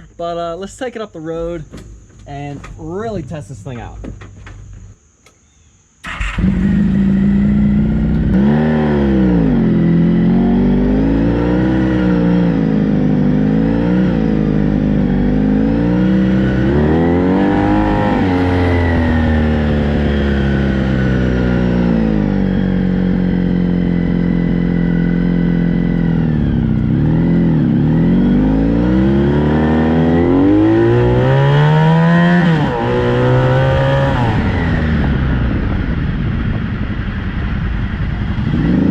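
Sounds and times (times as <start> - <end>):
motorcycle engine revving: 6.0 - 38.9.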